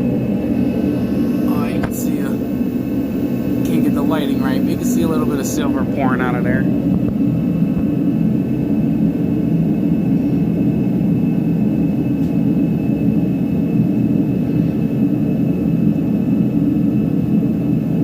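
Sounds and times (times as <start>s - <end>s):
car engine rumbling and knocking: 0.0s - 9.1s.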